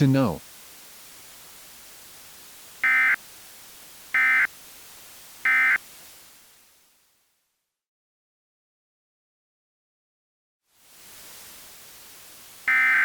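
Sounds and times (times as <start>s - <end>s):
faint hiss: 0.0s - 7.8s, 10.7s - 13.0s.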